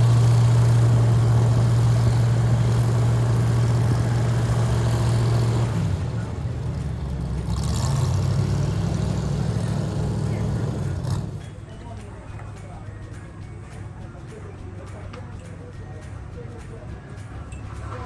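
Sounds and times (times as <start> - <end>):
airboat engine and propeller drone: 0.0 - 11.7.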